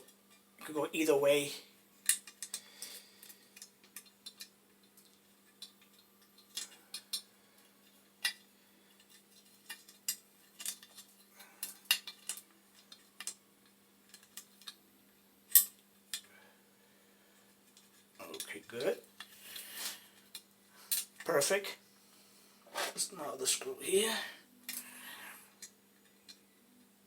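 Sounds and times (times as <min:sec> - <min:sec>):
metal parts and tools clinking: 0:03.2 - 0:13.4.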